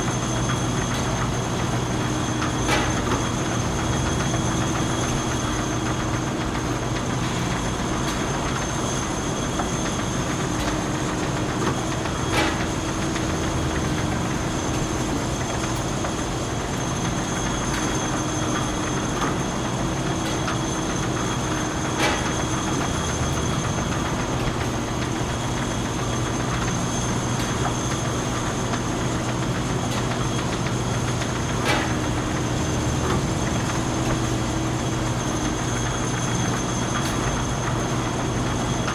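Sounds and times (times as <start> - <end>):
factory machinery humming: 0.0 - 38.9.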